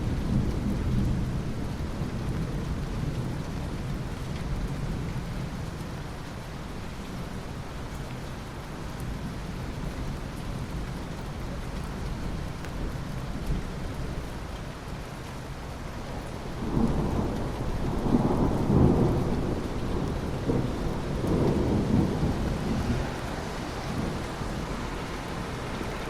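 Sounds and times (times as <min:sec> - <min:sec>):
steady rain: 0:00.0 - 0:26.0
thunder rolling: 0:16.5 - 0:26.0.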